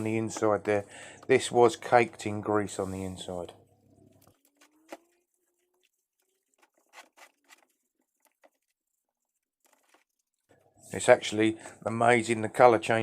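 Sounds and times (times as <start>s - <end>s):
brush scrubbing metal: 1.8s - 3.4s, 4.2s - 11.2s.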